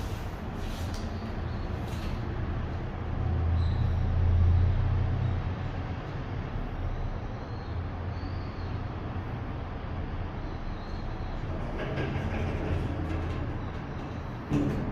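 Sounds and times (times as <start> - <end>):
elevator low hum: 0.0 - 14.9
elevator rumble: 0.0 - 14.9.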